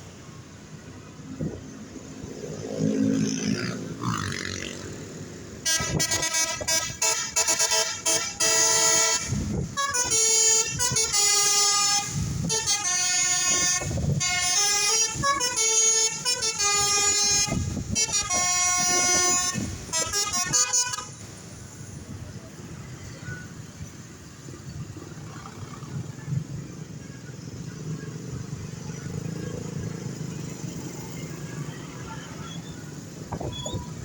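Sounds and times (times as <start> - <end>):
musical air horn melody: 5.6 - 21.2.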